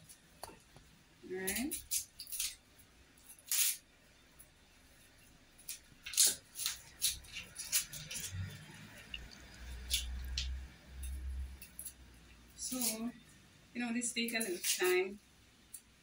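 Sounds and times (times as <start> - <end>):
onion skin crackling: 1.3 - 2.6, 3.2 - 3.9, 5.6 - 12.0, 12.6 - 13.2, 14.2 - 15.2.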